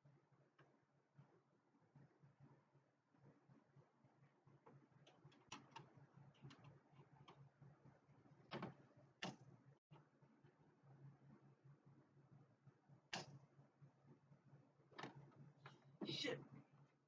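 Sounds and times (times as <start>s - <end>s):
faint clicks and taps: 0.4s - 10.6s.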